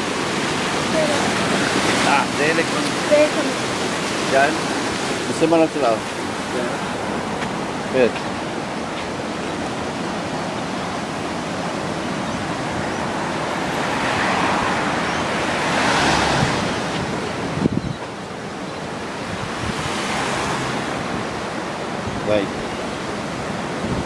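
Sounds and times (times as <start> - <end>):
floodwater rushing: 0.0 - 24.0
wind on microphone: 6.0 - 24.0.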